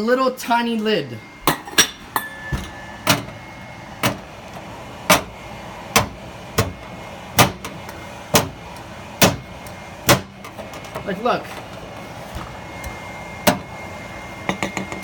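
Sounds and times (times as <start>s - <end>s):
vent fan whooshing: 2.1s - 14.5s
lid knocking on metal vent: 14.5s - 15.0s.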